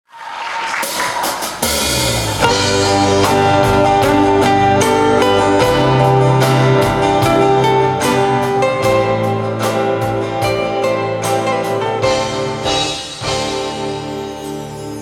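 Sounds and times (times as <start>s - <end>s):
live band playing ballad: 1.5s - 15.0s
guitar: 1.6s - 15.0s.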